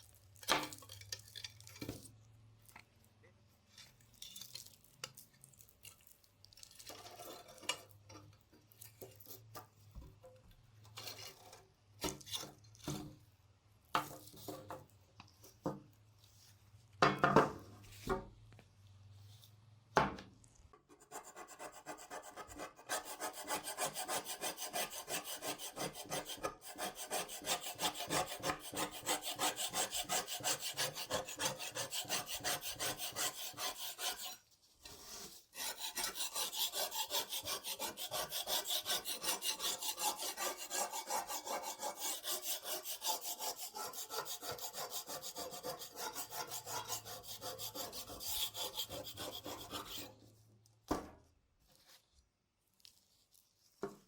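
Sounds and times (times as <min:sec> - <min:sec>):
hand tool rasping: 0:21.2 - 0:34.4, 0:35.5 - 0:50.2.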